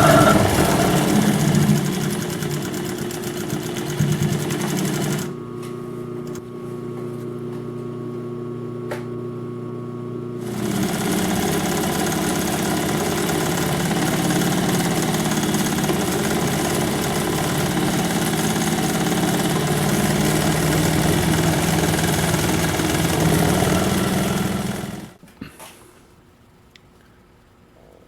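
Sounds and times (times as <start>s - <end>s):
sewing machine stitching: 0.0s - 5.3s, 10.4s - 25.2s.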